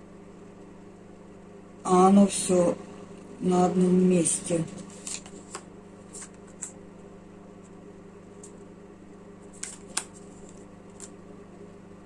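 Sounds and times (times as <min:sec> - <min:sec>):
steady low hum: 0:00.0 - 0:12.0
cards clicking and flicking: 0:04.9 - 0:06.8, 0:08.4 - 0:08.7, 0:09.4 - 0:11.2.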